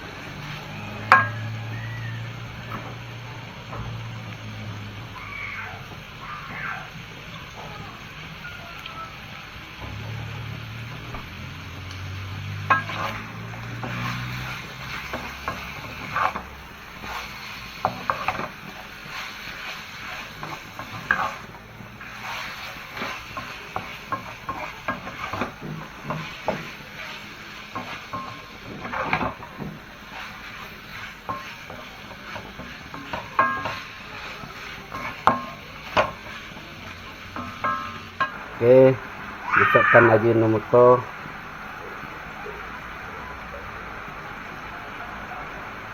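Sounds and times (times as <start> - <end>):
frog pieces sizzling in hot oil: 0.0 - 45.9
spatula scraping against pan: 0.3 - 4.8, 9.8 - 38.5.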